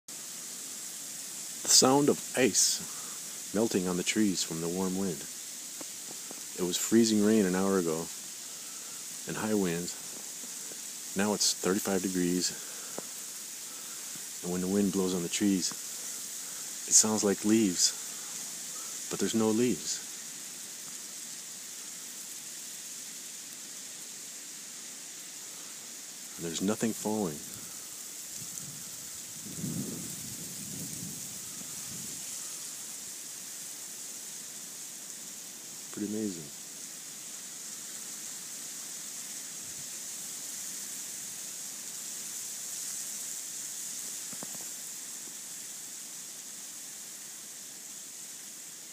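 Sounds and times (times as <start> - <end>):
melting ice hissing: 0.1 - 48.9
wind gusting through branches: 0.1 - 48.9
gusty wind: 28.4 - 32.4.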